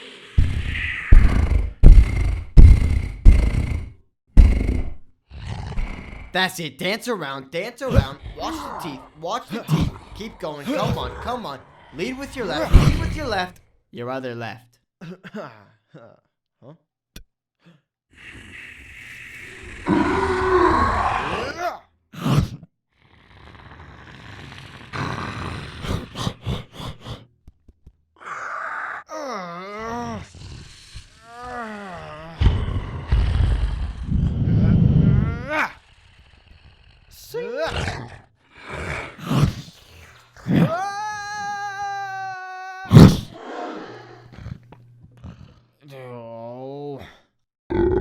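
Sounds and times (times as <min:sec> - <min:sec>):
breathy rushing noise: 0:00.0 - 0:05.0
person imitating a creature's roar: 0:00.0 - 0:06.4, 0:07.9 - 0:13.5, 0:18.2 - 0:22.5, 0:28.2 - 0:45.6, 0:47.1 - 0:48.0
vocal fight hits: 0:00.4 - 0:05.0, 0:12.2 - 0:13.5, 0:42.9 - 0:43.4
vocal cry: 0:07.8 - 0:13.5, 0:17.6 - 0:22.5, 0:28.2 - 0:45.7.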